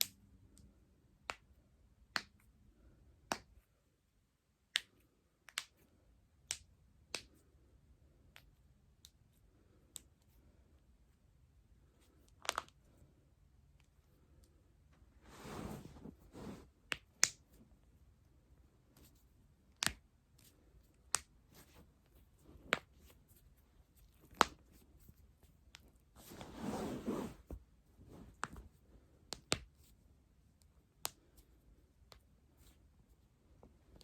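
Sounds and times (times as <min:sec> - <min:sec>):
soft rustling of movement: 0:13.9 - 0:18.0, 0:20.4 - 0:30.2.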